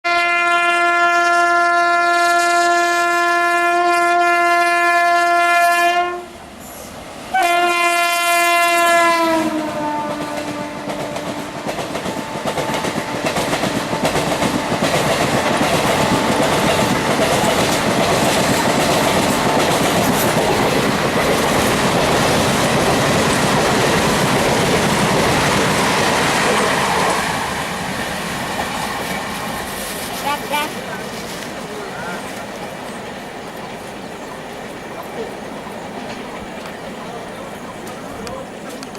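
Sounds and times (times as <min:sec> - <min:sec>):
locomotive horn blasts: 0:00.0 - 0:06.4, 0:07.3 - 0:11.6
train wheels clattering over rail joints: 0:10.2 - 0:33.9, 0:34.5 - 0:38.9.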